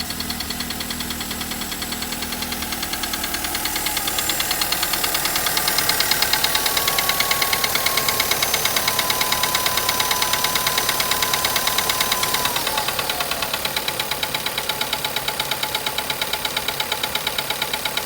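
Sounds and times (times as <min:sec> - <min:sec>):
car engine idling: 0:00.0 - 0:18.0.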